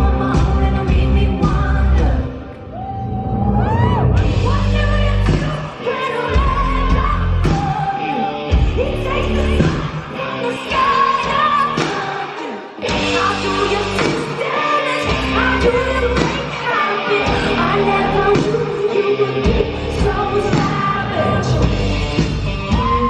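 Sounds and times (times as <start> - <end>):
live rock band: 0.0 - 23.0
person singing: 0.0 - 23.0.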